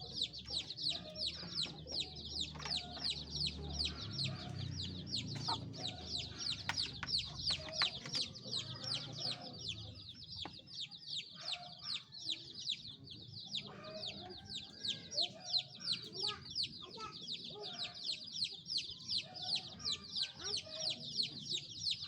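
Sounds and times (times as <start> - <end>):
hen clucking: 0.0 - 12.5
chicks peeping: 0.0 - 22.0.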